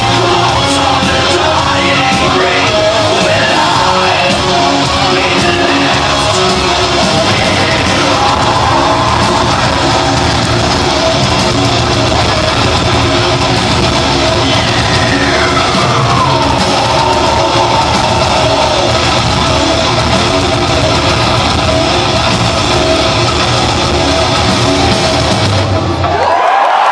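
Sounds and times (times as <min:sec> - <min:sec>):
distorted guitar note sliding down: 0:00.0 - 0:26.2
heavy metal band playing live: 0:00.0 - 0:26.7.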